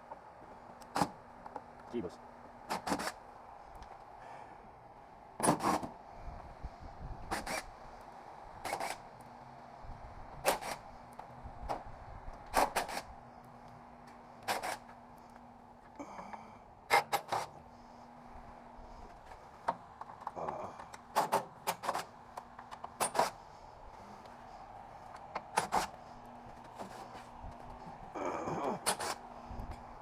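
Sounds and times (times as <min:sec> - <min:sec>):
faint steady hum: 0:00.0 - 0:30.0.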